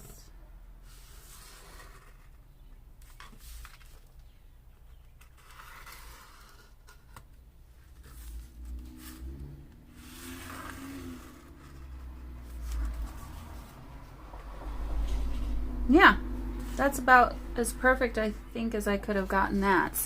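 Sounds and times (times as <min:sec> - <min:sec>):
cardboard and paper scraping: 0:00.9 - 0:02.4, 0:03.0 - 0:04.2, 0:04.9 - 0:15.6.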